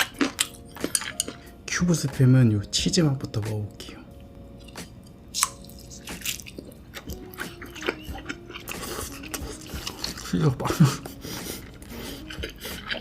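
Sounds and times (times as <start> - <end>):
soft wet chewing: 4.6 - 13.0
biting into food: 5.4 - 9.4.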